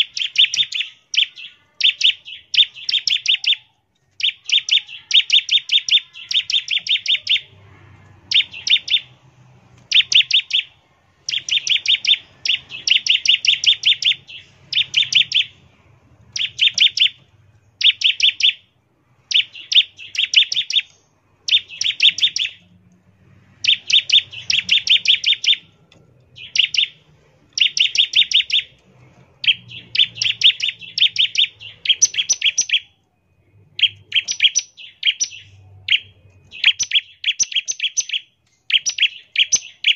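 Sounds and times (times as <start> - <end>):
bird singing fast high notes: 0.0 - 9.3.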